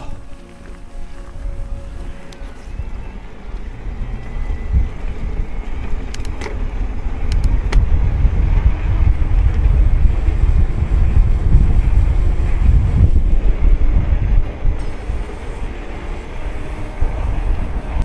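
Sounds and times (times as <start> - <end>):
wind buffeting microphone: 0.0 - 18.0
sharp clicks: 5.8 - 8.0.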